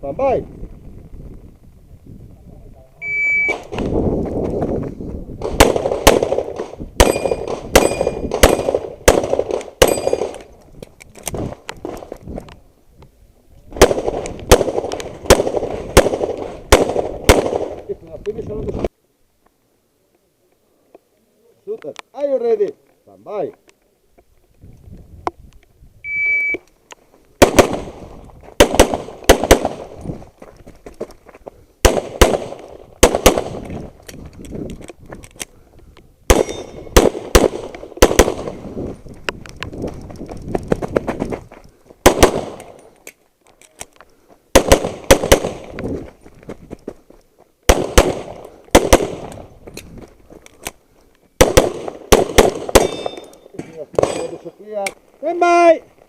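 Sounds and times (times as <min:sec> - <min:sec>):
electronic timer beep: 0:03.0 - 0:03.6, 0:26.0 - 0:26.6
handgun shots with echo: 0:51.4 - 0:53.3.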